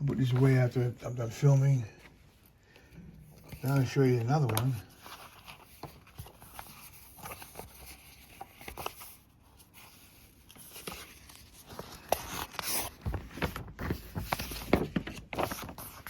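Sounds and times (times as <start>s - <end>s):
paper rustling and crinkling: 3.3s - 16.0s.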